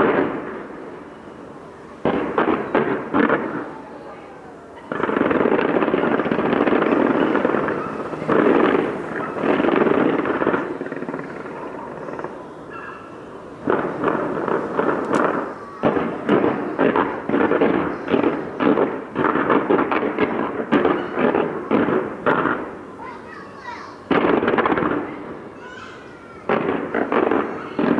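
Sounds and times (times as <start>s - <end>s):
fireworks bursting and crackling: 0.0s - 25.6s, 26.4s - 27.9s
rapid sharp bangs: 2.0s - 22.7s, 26.5s - 27.9s.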